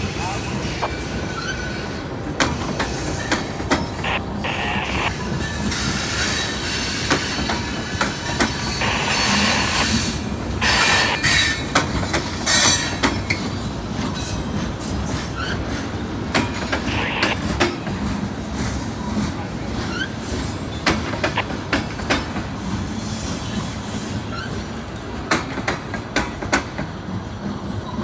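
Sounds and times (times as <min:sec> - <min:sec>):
freight train rumbling: 0:00.0 - 0:28.0
wheel squeal and hiss: 0:22.5 - 0:24.8.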